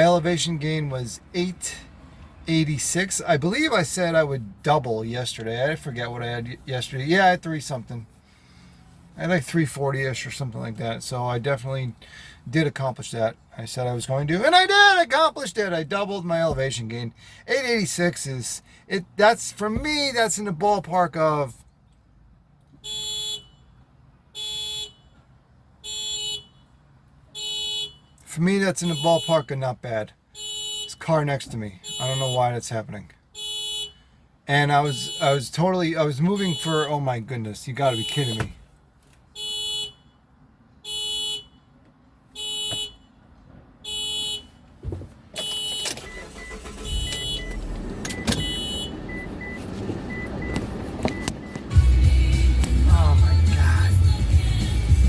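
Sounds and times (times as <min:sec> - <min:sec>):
car alarm horn honks: 0:22.8 - 0:25.2, 0:25.8 - 0:28.2, 0:28.8 - 0:29.6, 0:30.3 - 0:32.5, 0:33.3 - 0:35.5, 0:36.3 - 0:37.0, 0:37.8 - 0:38.6, 0:39.3 - 0:40.2, 0:40.8 - 0:43.2, 0:43.8 - 0:44.6, 0:45.4 - 0:52.0.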